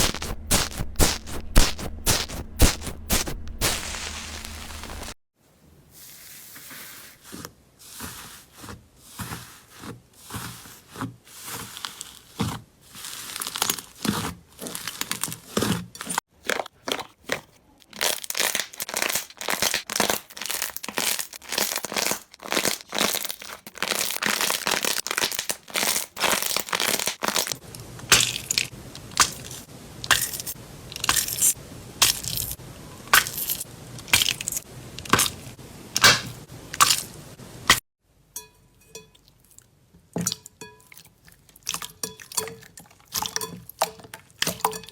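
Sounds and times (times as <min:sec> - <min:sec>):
slime popping and crackling: 0:00.0 - 0:05.2, 0:16.4 - 0:37.8.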